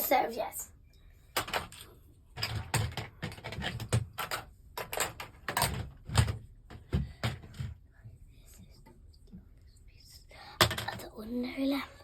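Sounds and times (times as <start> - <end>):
plastic bricks clicking and knocking: 1.4 - 7.8.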